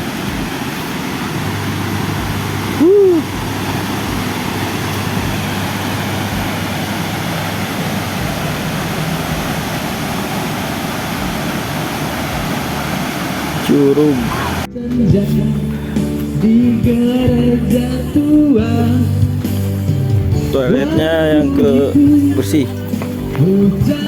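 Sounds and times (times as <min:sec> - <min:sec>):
tone rising and falling: 0:00.0 - 0:14.7
waterfall rushing: 0:00.0 - 0:14.7.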